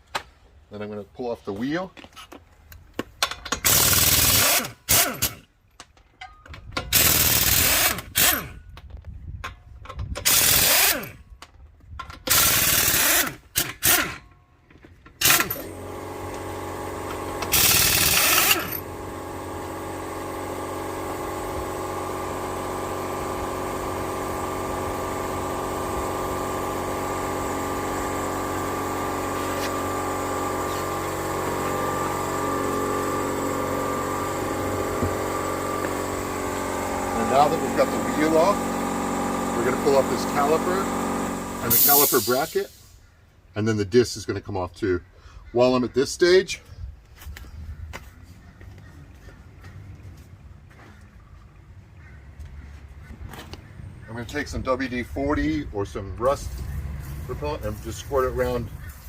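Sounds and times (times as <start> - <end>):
impact wrench bursts: 3.2 - 5.5, 6.8 - 8.6, 10.2 - 11.2, 12.0 - 14.4, 15.1 - 43.0
motor humming: 15.2 - 43.0.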